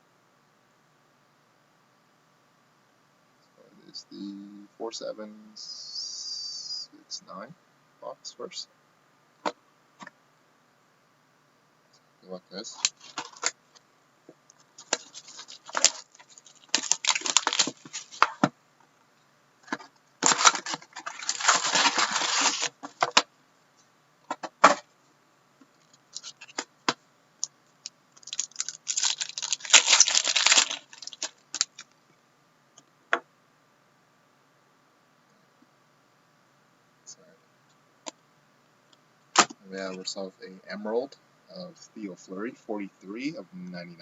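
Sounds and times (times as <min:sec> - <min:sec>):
wrappers ripping and rustling: 0:14.8 - 0:18.4, 0:20.2 - 0:22.9, 0:26.1 - 0:26.6, 0:28.2 - 0:31.8.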